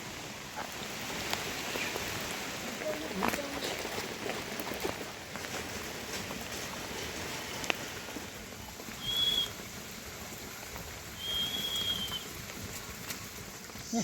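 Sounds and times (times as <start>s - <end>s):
rain pattering: 0.0s - 14.0s
high whistled notes: 9.0s - 9.6s, 11.2s - 12.2s.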